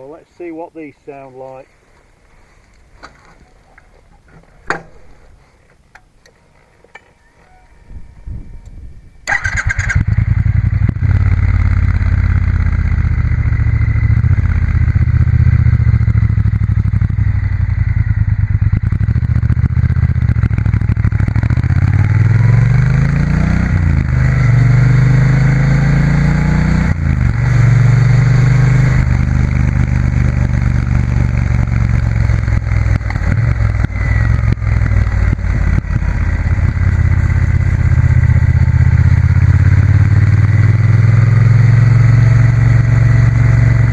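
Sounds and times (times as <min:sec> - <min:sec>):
motorcycle engine while riding: 0:08.8 - 0:43.9.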